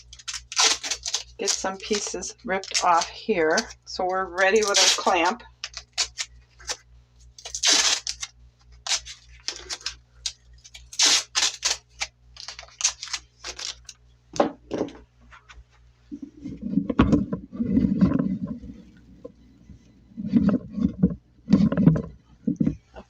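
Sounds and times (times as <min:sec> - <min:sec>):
plastic wrap and tape crackling: 0:00.0 - 0:14.0
low rumbling handling noise: 0:14.3 - 0:23.0.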